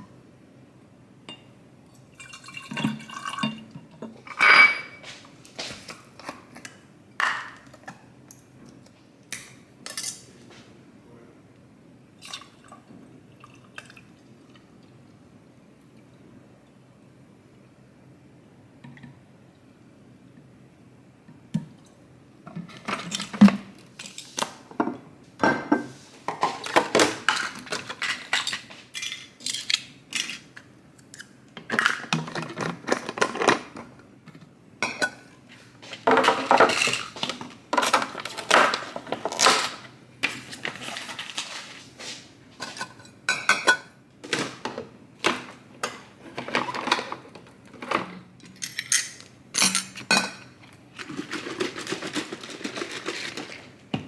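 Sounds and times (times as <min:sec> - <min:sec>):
kitchen dishes clinking and clattering: 0:02.2 - 0:05.2, 0:34.8 - 0:35.3, 0:36.0 - 0:41.5, 0:42.6 - 0:54.0.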